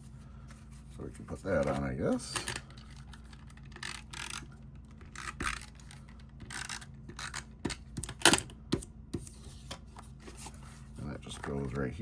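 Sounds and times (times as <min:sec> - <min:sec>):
paper rustling and scraping: 0:09.2 - 0:12.0.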